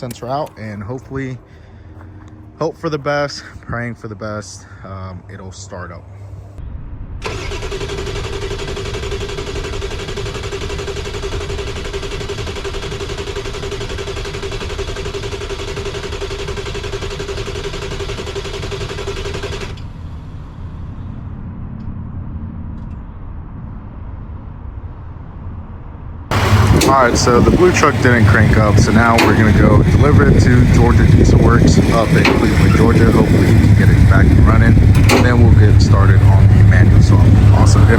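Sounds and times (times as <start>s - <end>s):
low rumble: 6.0s - 10.4s, 19.8s - 37.9s
diesel engine starter cranking: 7.2s - 20.2s, 26.3s - 37.9s.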